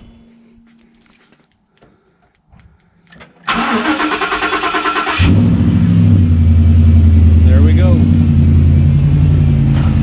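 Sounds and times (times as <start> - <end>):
starter cranking engine: 3.4 - 5.4.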